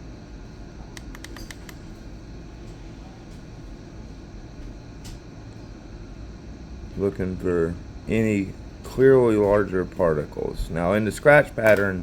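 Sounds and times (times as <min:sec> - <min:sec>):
low background hum: 0:00.0 - 0:12.0
small clicks: 0:01.0 - 0:01.8.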